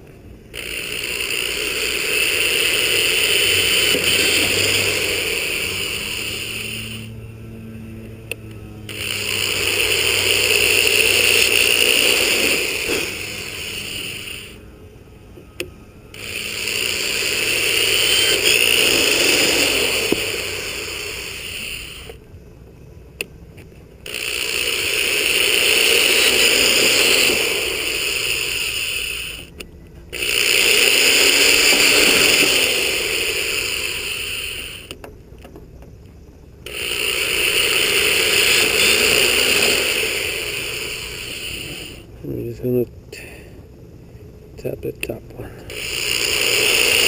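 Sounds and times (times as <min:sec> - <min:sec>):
power sander on fiberglass: 0:00.6 - 0:14.6, 0:16.1 - 0:22.2, 0:24.0 - 0:29.5, 0:30.2 - 0:35.0, 0:36.7 - 0:42.1, 0:45.7 - 0:47.0.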